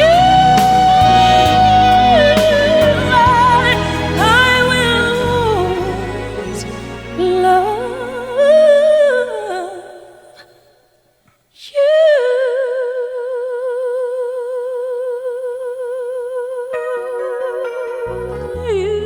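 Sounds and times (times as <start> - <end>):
soft musical accompaniment: 0.0 - 9.8, 16.7 - 19.0
slow sung ballad: 0.0 - 10.8, 11.6 - 19.0.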